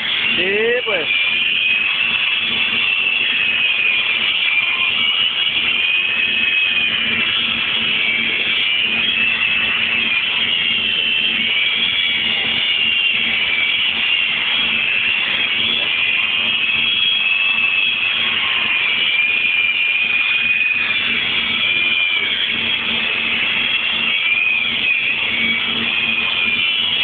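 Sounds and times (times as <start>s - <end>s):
arc welding noise: 0.0s - 27.0s
high wavering whine: 0.0s - 27.0s.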